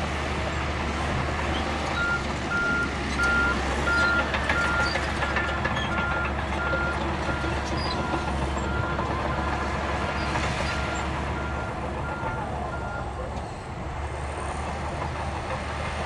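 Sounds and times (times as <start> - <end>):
diesel engine rumble: 0.0 - 16.0
reversing alarm beeping: 2.0 - 9.6.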